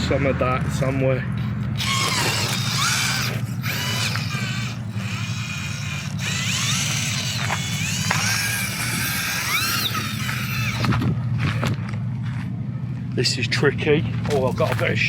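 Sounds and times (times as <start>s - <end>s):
electric motor whining: 0.0s - 12.0s
steady low hum: 0.0s - 15.0s.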